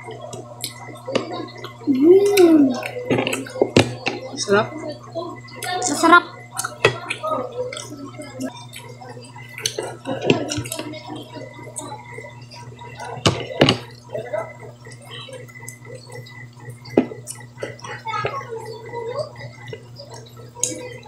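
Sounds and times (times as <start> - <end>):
steady low hum: 0.0 - 21.0
wet chewing and lip-smacking: 0.3 - 4.2, 5.6 - 8.9, 9.5 - 13.9.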